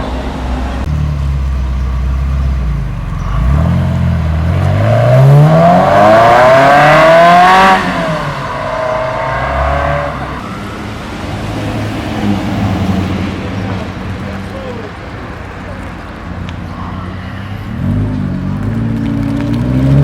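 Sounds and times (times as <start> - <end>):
car accelerating past: 0.8 - 14.2, 17.4 - 20.0.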